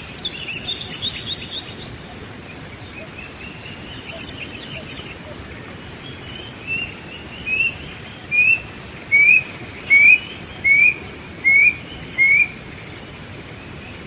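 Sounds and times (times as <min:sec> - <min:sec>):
bird whistling rising notes: 0:06.8 - 0:12.6.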